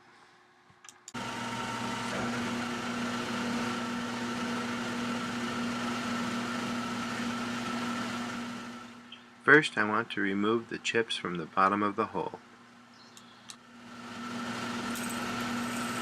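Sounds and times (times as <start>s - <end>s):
electric motor humming and whining: 1.2s - 9.0s, 13.5s - 16.0s.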